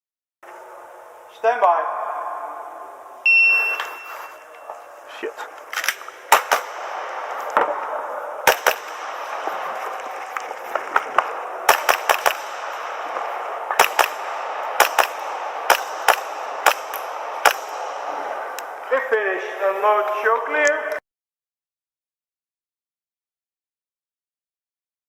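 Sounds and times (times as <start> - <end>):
background hiss: 0.5 - 20.9
airsoft pistol shots: 5.8 - 9.7, 11.2 - 18.5.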